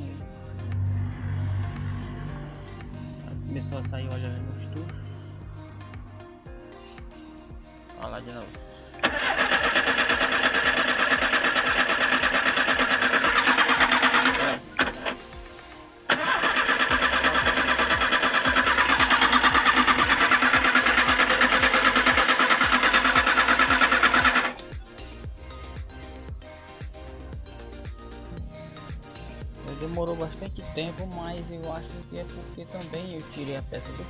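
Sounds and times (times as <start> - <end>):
engine cranking on starter motor: 9.0 - 15.3, 16.1 - 24.7.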